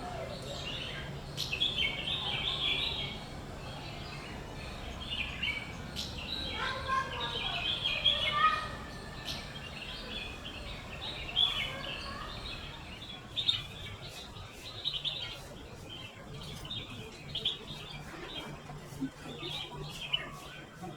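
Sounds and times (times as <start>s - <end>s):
martins chirping: 0.0s - 20.9s.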